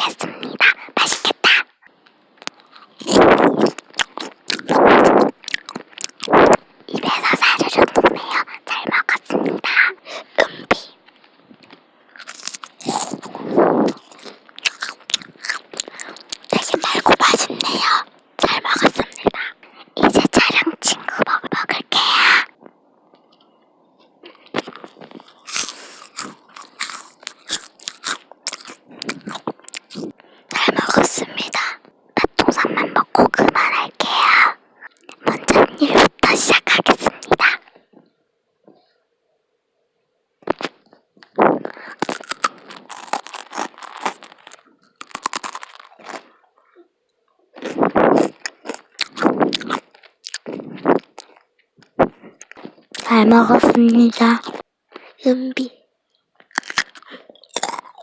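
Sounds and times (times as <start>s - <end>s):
crunching and chewing snack: 2.4s - 8.4s, 11.1s - 19.8s, 23.1s - 31.7s, 40.5s - 46.9s, 47.5s - 53.1s, 56.1s - 58.0s.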